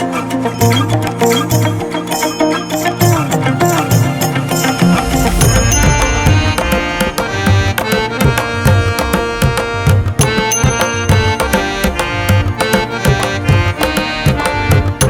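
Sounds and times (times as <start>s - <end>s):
sustained melodic notes: 0.0s - 15.0s
hand drum beat: 3.1s - 15.0s.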